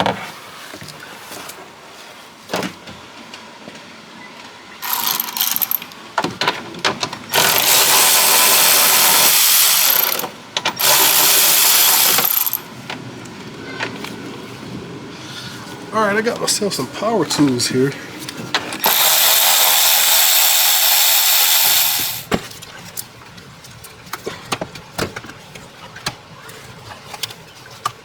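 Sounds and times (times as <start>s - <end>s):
handheld power tool running: 4.8s - 5.9s, 7.3s - 12.7s, 18.8s - 22.3s.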